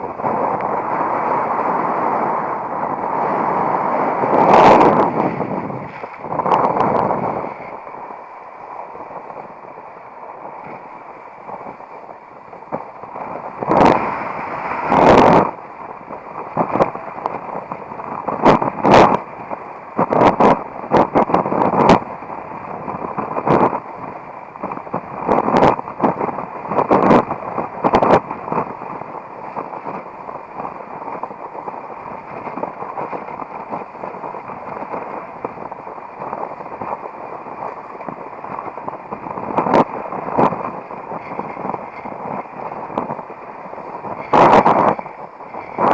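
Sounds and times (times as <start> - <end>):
strong wind buffeting microphone: 0.0 - 45.9.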